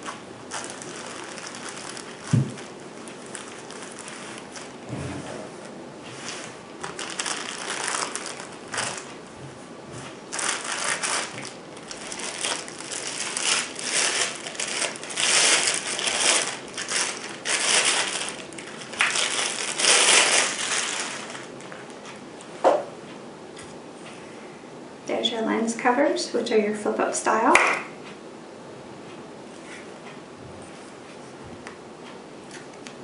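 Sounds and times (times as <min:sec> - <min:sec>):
packaging crinkling: 0:00.0 - 0:04.9, 0:06.2 - 0:09.2, 0:10.2 - 0:21.9.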